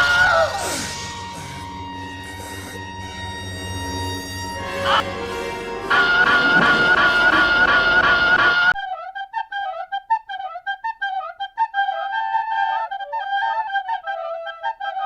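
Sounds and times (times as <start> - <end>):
solo wind instrument melody: 0.0 - 9.2
louder fuller sound: 0.3 - 8.8.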